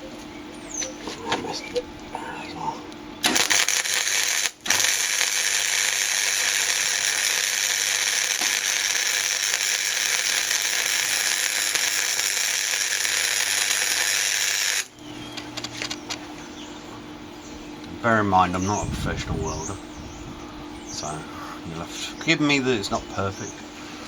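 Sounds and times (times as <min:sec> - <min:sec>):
welding arc crackling: 0:03.2 - 0:16.0.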